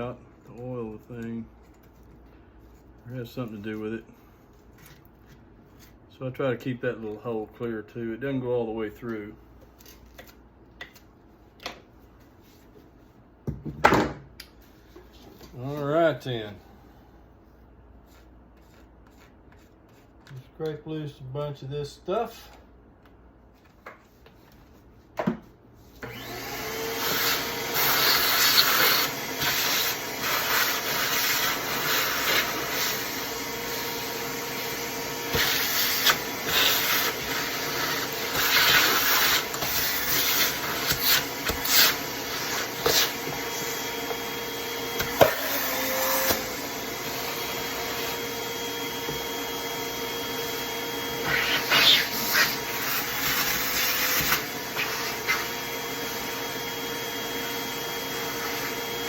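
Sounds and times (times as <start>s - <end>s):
shop vacuum running: 25.9s - 59.0s.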